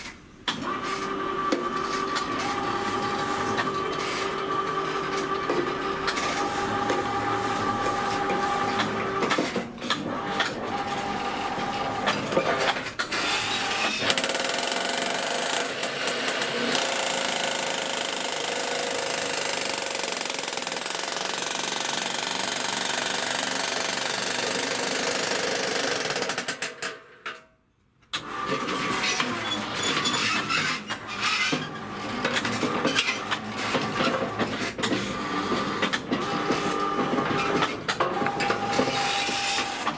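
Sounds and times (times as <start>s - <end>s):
jackhammer hammering rapidly: 13.8s - 26.7s.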